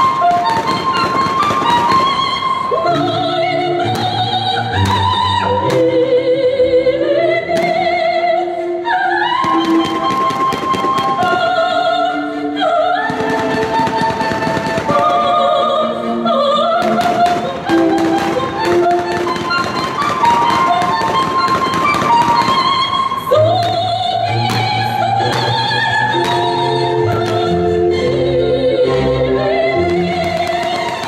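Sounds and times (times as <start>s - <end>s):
fireworks exploding: 0.0s - 3.2s, 9.4s - 11.6s, 13.1s - 15.4s, 16.8s - 27.6s, 29.8s - 31.0s
operatic singing over speakers: 0.0s - 31.0s.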